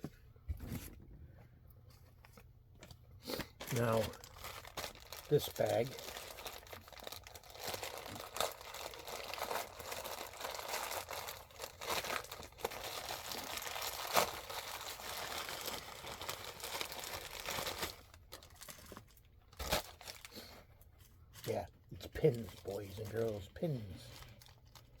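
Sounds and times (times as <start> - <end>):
plastic bag crinkling and tearing: 3.4 - 20.5, 22.2 - 25.0.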